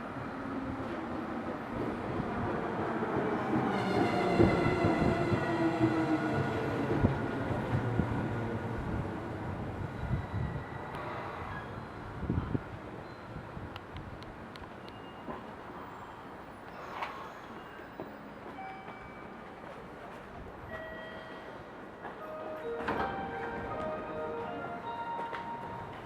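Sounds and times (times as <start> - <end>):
electric train passing: 22.2 - 26.0.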